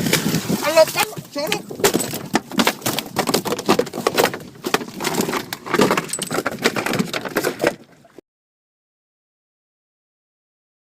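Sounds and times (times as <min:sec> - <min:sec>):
rapid clattering and knocking: 0:00.0 - 0:07.9.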